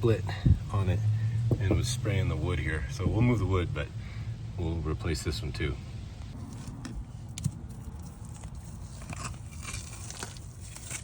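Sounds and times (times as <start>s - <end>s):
digging in rooty soil: 6.4s - 11.0s.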